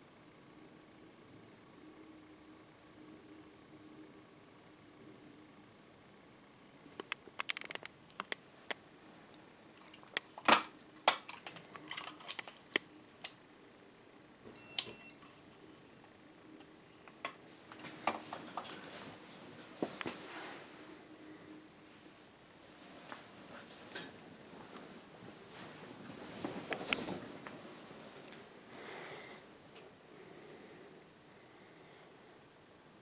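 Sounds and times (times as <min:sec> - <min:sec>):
faint steady hum: 0:00.0 - 0:33.0
short electronic beep: 0:14.6 - 0:15.2.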